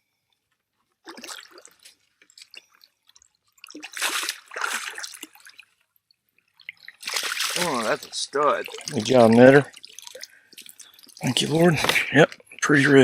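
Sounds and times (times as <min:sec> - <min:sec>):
fish thrashing splashing water: 0:01.0 - 0:05.8, 0:06.6 - 0:12.1.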